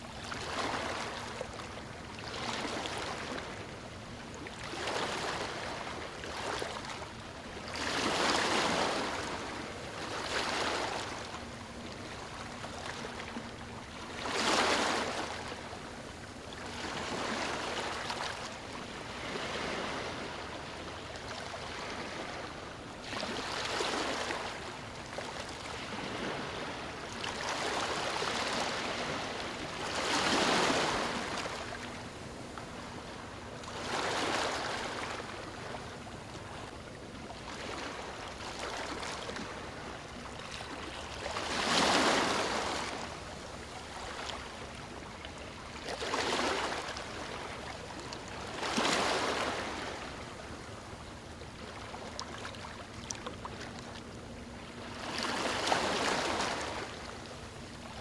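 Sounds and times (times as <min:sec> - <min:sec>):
ocean waves breaking: 0:16.8 - 0:20.8, 0:25.3 - 0:33.0, 0:37.5 - 0:43.2.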